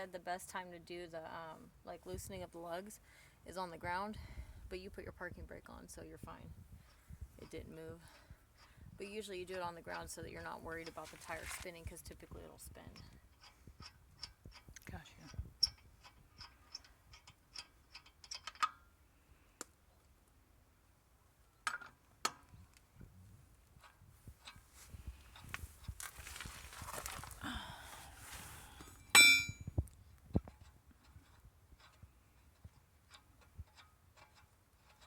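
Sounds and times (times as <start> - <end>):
metal clinks and taps: 29.0 - 29.8
loud metallic clang: 29.2 - 29.6.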